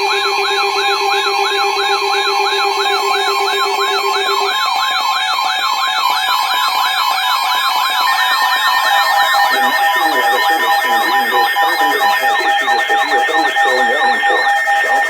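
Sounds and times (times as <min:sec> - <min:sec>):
steady alarm tones: 0:00.0 - 0:15.0
electronic siren yelping: 0:00.6 - 0:15.0.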